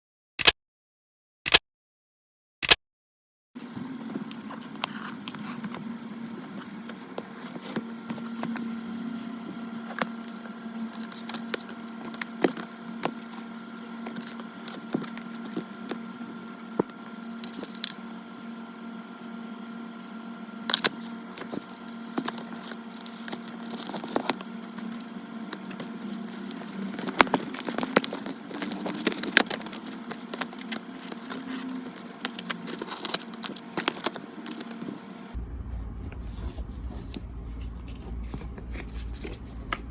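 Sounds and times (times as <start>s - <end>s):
cardboard and plastic crackling: 20.8s - 39.9s
low hum: 35.3s - 39.9s.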